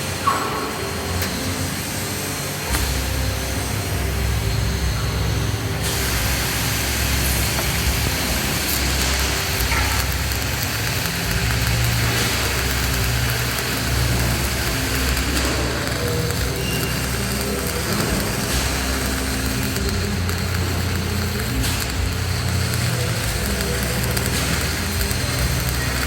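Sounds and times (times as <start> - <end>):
welding arc crackling hiss: 0.0 - 26.0.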